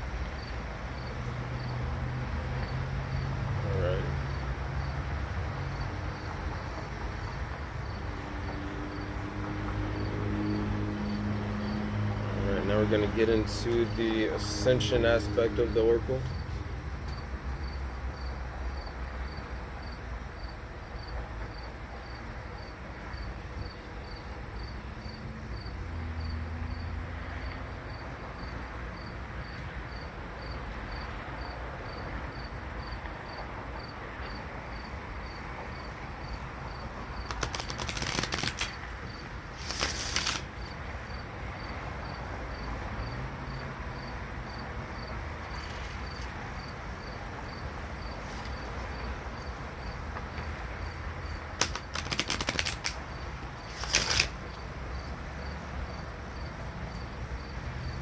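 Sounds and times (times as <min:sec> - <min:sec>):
cricket chirping: 0:00.2 - 0:01.8, 0:02.6 - 0:05.0, 0:17.1 - 0:27.0, 0:27.9 - 0:37.3, 0:39.0 - 0:50.1, 0:50.8 - 0:51.4, 0:54.5 - 0:58.0
rustling bursts: 0:37.3 - 0:40.7, 0:51.6 - 0:54.6.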